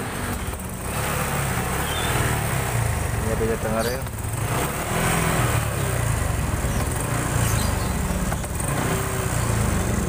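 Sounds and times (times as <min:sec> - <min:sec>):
motorcycle engine idling unevenly: 0:00.0 - 0:10.0.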